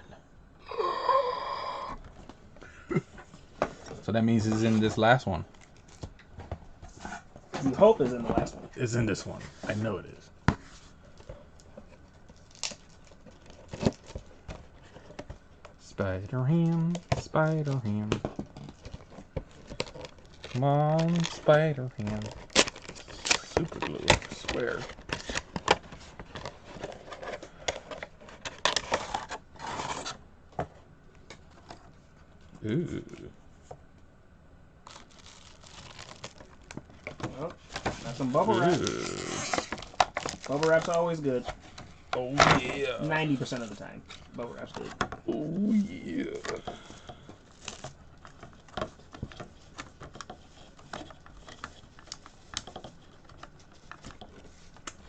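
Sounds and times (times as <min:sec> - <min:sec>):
plastic packaging crackling: 0:11.2 - 0:15.1, 0:16.7 - 0:30.0, 0:34.8 - 0:41.5, 0:47.4 - 0:55.0
cardboard tearing: 0:19.5 - 0:25.8, 0:38.0 - 0:41.4.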